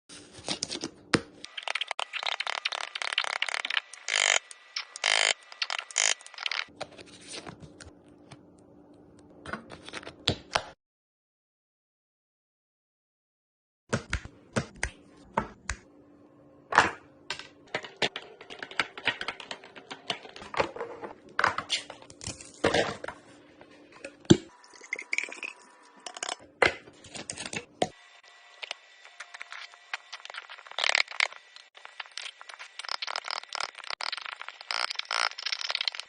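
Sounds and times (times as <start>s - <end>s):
containers clicking and knocking: 17.3s - 21.7s.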